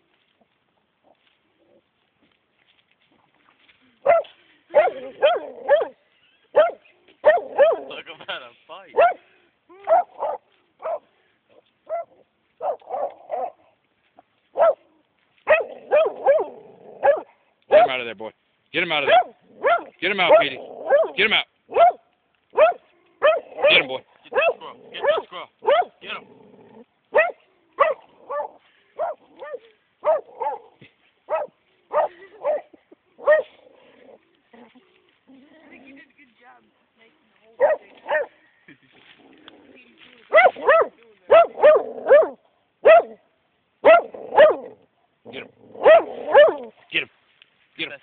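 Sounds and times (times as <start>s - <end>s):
dog barking: 4.0s - 8.0s, 8.9s - 11.1s, 11.8s - 13.7s, 14.5s - 14.9s, 15.5s - 18.0s, 19.0s - 26.0s, 27.1s - 33.6s, 37.6s - 38.4s, 40.3s - 43.2s, 43.8s - 44.8s, 45.8s - 46.7s.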